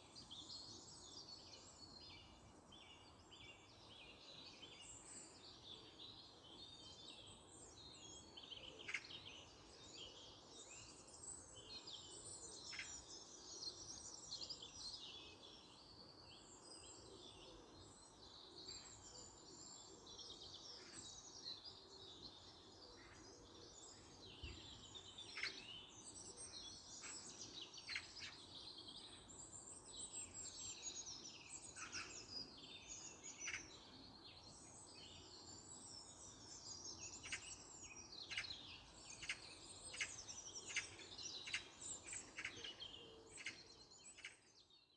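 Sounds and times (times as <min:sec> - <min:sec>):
songbirds chirping and trilling: 0:00.0 - 0:44.9.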